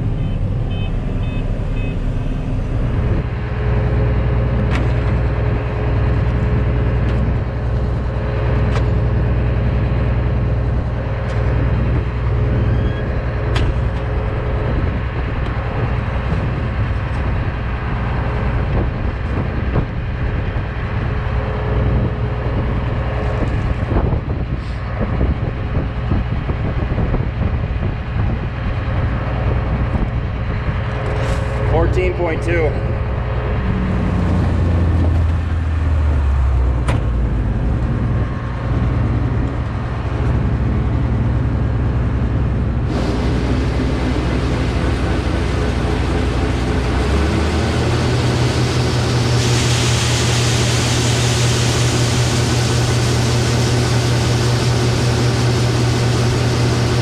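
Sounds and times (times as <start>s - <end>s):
short beeps: 0.0s - 2.9s
combine engine drone with whine: 0.0s - 57.0s.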